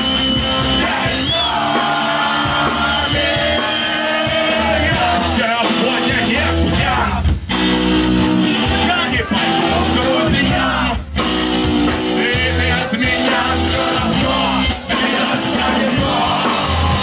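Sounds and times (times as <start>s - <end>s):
punk rock band playing: 0.0s - 17.0s
person singing: 8.7s - 11.0s.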